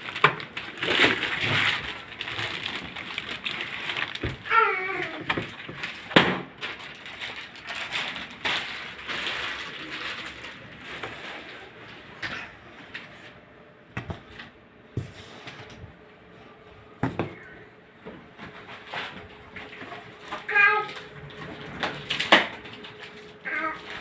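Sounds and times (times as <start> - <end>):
scraping and rustling: 0.0 - 13.4, 18.2 - 24.0.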